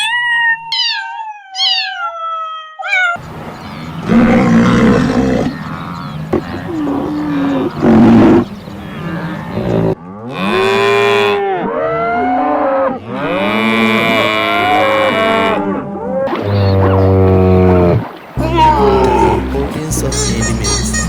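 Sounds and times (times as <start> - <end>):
cattle mooing: 3.6 - 15.6, 16.4 - 20.6.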